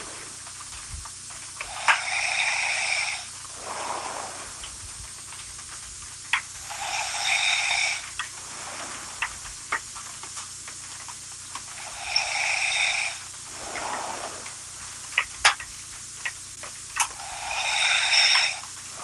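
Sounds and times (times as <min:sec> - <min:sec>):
woman snoring: 0:01.7 - 0:04.5, 0:06.6 - 0:09.3, 0:11.8 - 0:14.5, 0:17.1 - 0:19.0.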